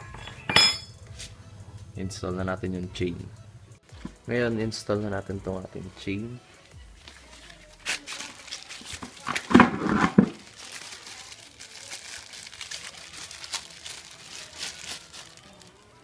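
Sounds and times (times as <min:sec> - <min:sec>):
bicycle chain crinkling and rustling: 0:06.6 - 0:16.0.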